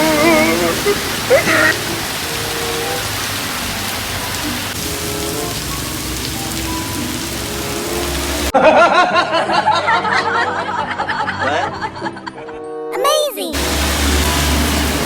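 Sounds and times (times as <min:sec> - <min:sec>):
high-pitched voices: 0:00.0 - 0:01.9, 0:12.9 - 0:13.6
music: 0:00.0 - 0:15.0.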